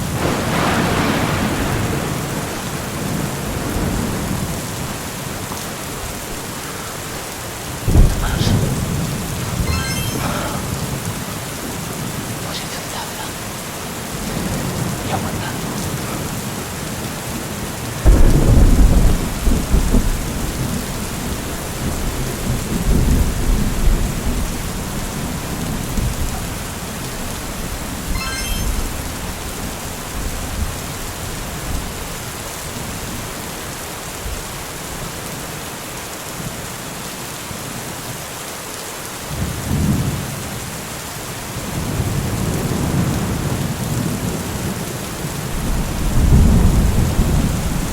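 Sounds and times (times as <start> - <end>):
thunder rumbling: 0.0 - 5.1, 7.8 - 9.7, 18.0 - 26.7, 45.5 - 47.9
steady rain: 0.0 - 47.9.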